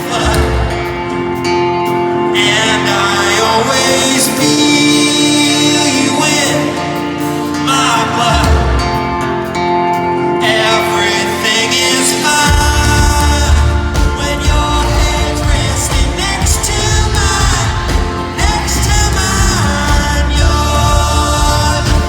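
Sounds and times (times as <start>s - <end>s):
live pop-folk band music: 0.0s - 22.0s
man singing: 0.0s - 22.0s
deep bass notes: 12.4s - 22.0s.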